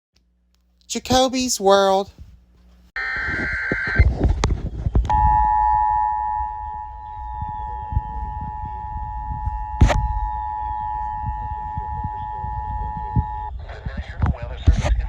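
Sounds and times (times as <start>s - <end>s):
two-tone alert signal: 5.1s - 13.5s
radio clicks: 8.0s - 15.0s.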